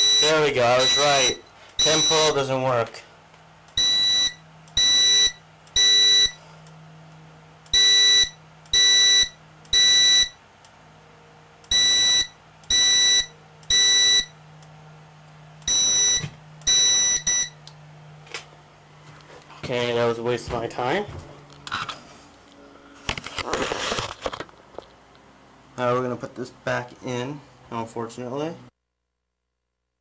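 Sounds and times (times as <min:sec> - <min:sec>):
fire alarm beeping: 0:00.0 - 0:02.5, 0:03.8 - 0:06.4, 0:07.7 - 0:10.4, 0:11.7 - 0:14.4, 0:15.6 - 0:17.6
low steady hum: 0:00.0 - 0:28.7.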